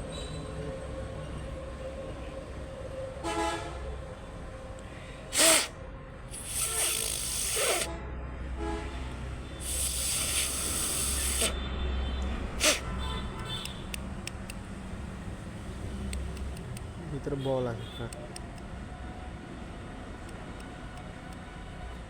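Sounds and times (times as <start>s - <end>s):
hissing bursts: 5.3s - 5.7s, 6.3s - 7.9s, 9.5s - 11.6s, 12.5s - 13.7s.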